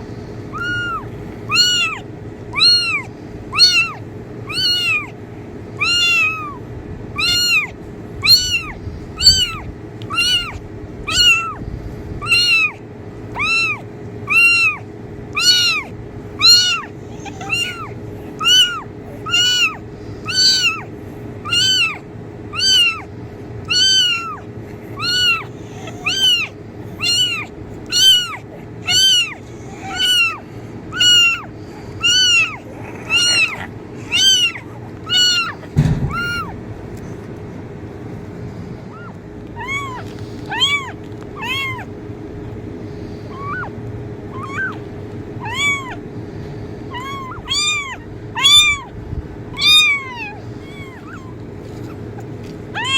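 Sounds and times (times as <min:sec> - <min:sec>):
kitten meowing: 0:00.5 - 0:05.2, 0:05.8 - 0:11.6, 0:12.2 - 0:36.6, 0:38.9 - 0:42.0, 0:43.3 - 0:46.1, 0:46.9 - 0:52.9.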